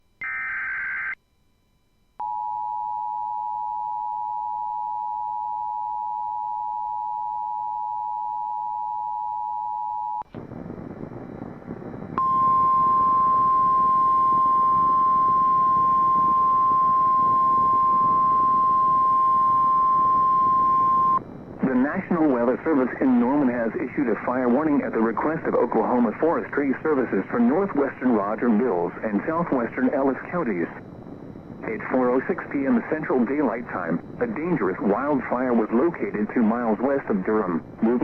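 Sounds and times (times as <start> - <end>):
radio static: 10.3 - 38.0
steady warning alarm tone: 11.1 - 25.0
two-tone attention signal: 12.2 - 21.2.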